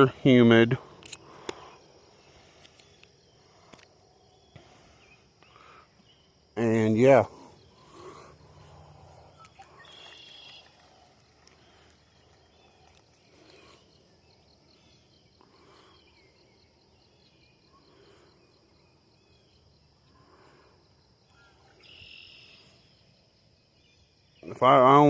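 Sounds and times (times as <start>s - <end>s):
high insect trill: 0.0s - 25.0s
soft chirps: 7.1s - 19.7s, 21.2s - 23.0s.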